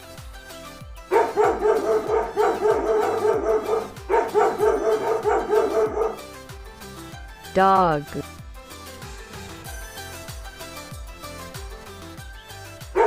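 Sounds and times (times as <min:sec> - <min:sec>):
dog barking: 0:01.1 - 0:06.4.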